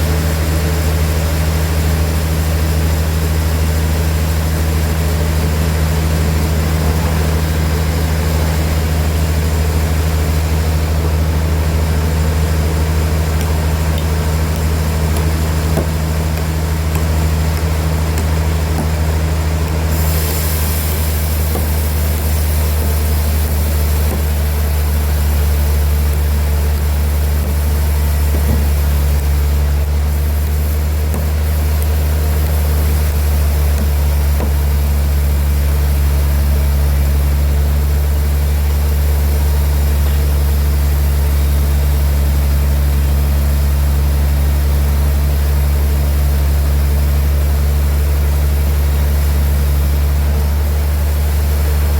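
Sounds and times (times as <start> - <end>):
sawmill machinery droning: 0.0 - 51.9
higher hiss: 13.4 - 36.9.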